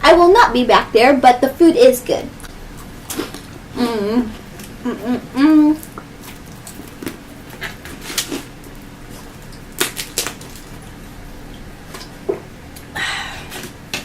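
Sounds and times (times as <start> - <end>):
crunchy snack chewing: 2.4 - 11.0.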